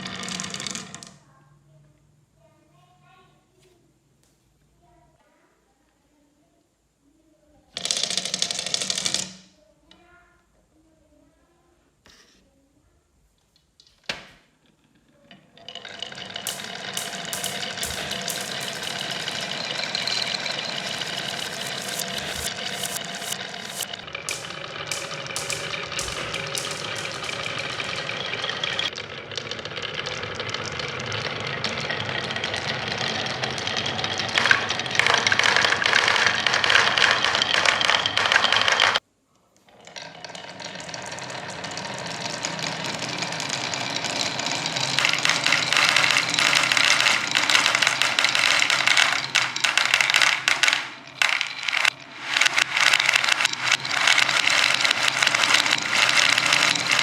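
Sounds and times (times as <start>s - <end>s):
balls rattling down wooden marble run: 0.0s - 1.2s, 7.8s - 9.4s, 15.5s - 39.0s, 39.8s - 57.0s.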